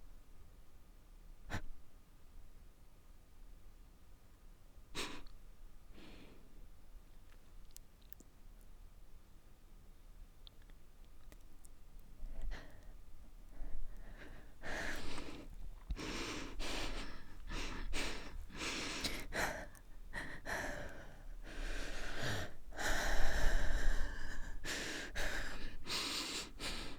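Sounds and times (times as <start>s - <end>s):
woman breathing and sighing: 12.2s - 26.9s.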